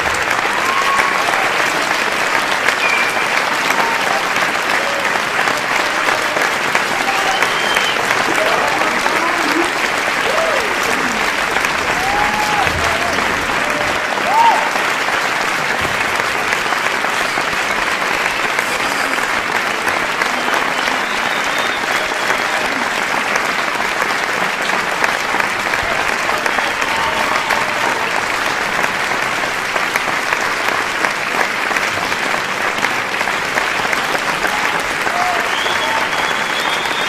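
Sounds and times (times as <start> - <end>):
crowd shouts: 0.0 - 15.0, 25.7 - 28.4
audience applauding: 0.0 - 37.0.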